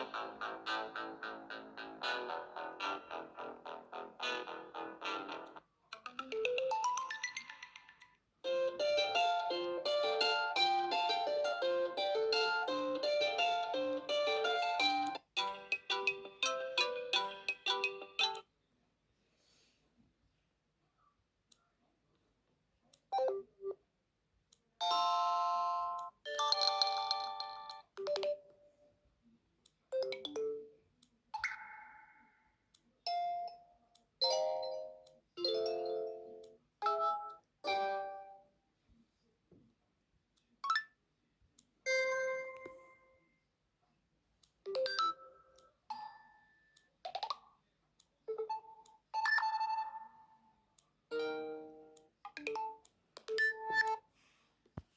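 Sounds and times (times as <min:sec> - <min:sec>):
phone ringtone chimes and jingles: 0:06.3 - 0:18.4, 0:24.8 - 0:27.9.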